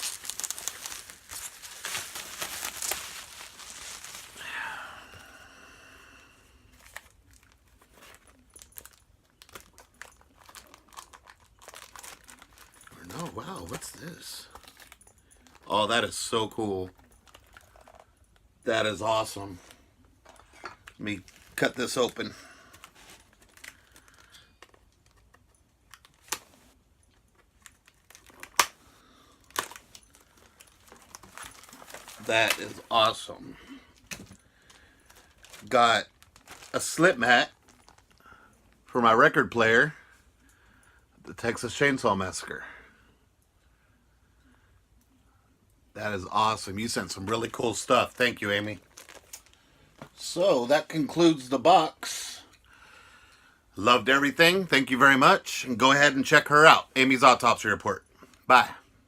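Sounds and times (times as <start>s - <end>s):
packaging crinkling: 0.0s - 5.3s, 6.7s - 15.8s, 16.9s - 18.1s, 19.6s - 33.3s, 33.9s - 38.3s, 46.8s - 50.2s
small crackles: 0.0s - 5.3s, 6.6s - 16.1s, 16.8s - 18.5s, 19.4s - 39.0s, 46.8s - 50.4s.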